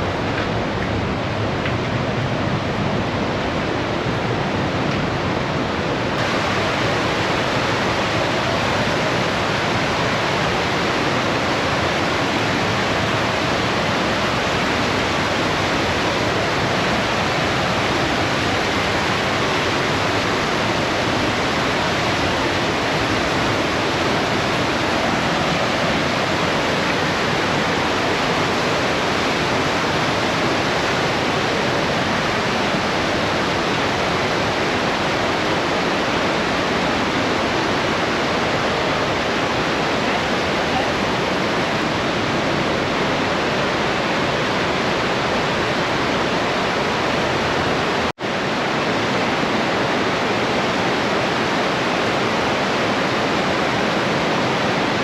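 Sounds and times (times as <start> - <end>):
river rushing through rock gorge: 0.0 - 55.0
waterfalls: 0.0 - 55.0.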